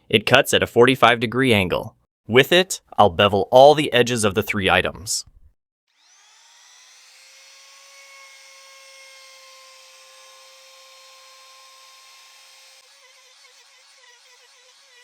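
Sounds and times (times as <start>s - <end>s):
wood router whining: 5.9s - 15.0s.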